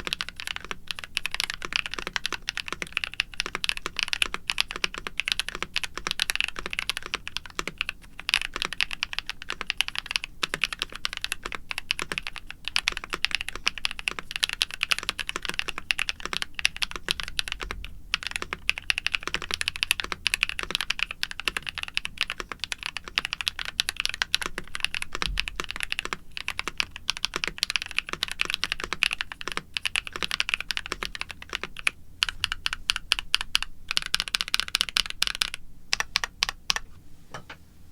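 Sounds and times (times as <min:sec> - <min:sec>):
fast typing on mechanical keyboard: 0:00.0 - 0:36.8.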